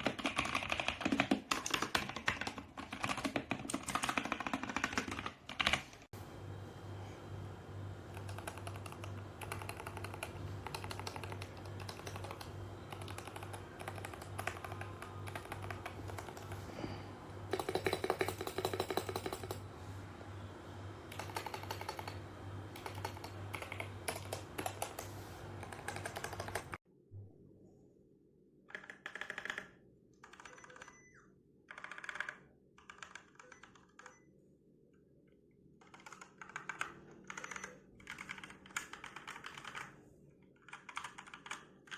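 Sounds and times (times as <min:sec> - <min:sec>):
mechanical keyboard typing: 0:00.0 - 0:06.1, 0:08.1 - 0:16.6, 0:17.5 - 0:19.6, 0:21.1 - 0:26.8, 0:28.7 - 0:31.0, 0:31.7 - 0:34.2, 0:35.8 - 0:41.9
low steady hum: 0:06.2 - 0:28.6.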